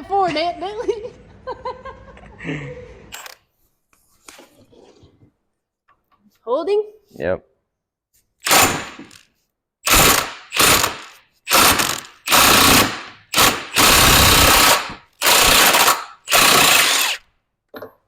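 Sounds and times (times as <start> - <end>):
wrench bursts on engine nut: 8.4 - 9.2, 9.8 - 17.2.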